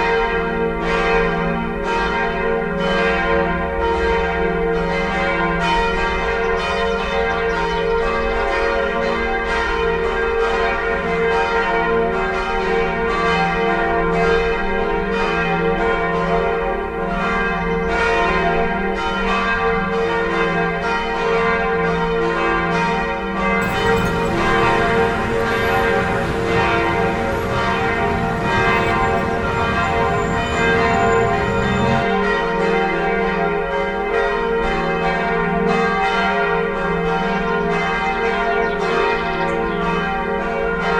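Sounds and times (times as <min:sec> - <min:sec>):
church bells ringing: 0:23.6 - 0:32.0
rushing noise: 0:23.6 - 0:32.0.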